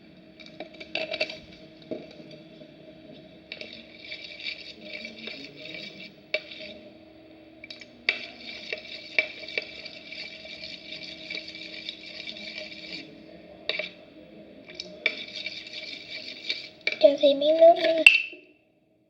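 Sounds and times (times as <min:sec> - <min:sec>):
stirrer clicking against tray: 0:03.5 - 0:06.8, 0:07.6 - 0:14.0, 0:14.7 - 0:17.1
glue being stirred: 0:03.5 - 0:06.9, 0:07.6 - 0:18.2.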